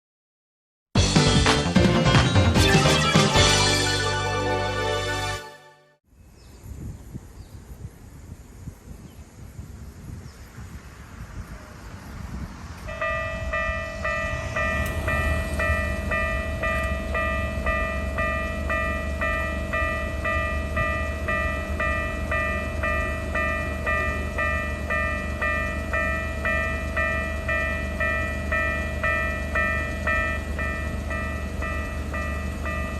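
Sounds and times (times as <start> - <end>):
low rumble: 9.8 - 32.9
level crossing warning bell ringing: 12.9 - 32.9.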